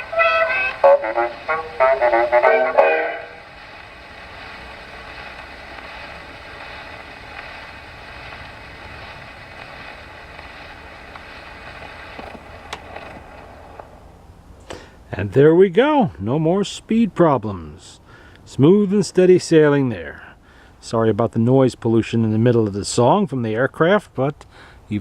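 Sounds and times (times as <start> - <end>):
dance-band vocal record on gramophone: 0.0 - 13.2
gramophone needle hiss: 0.0 - 25.0.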